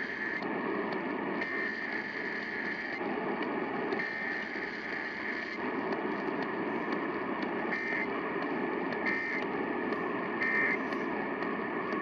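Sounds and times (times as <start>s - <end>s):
radio static hiss: 0.0s - 12.0s
alert data tone bursts: 7.7s - 8.1s, 9.0s - 9.4s, 10.4s - 10.8s.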